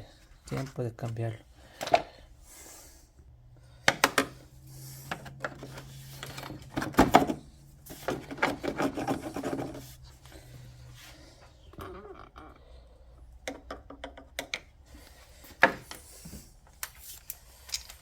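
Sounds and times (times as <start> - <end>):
rubbing and scraping: 4.6 - 11.7.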